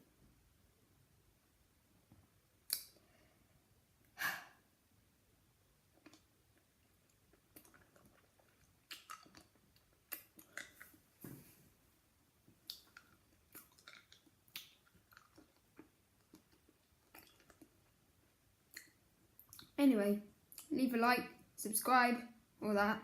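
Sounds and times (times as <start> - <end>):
person chewing a sweet: 5.9 - 11.0, 12.6 - 18.0.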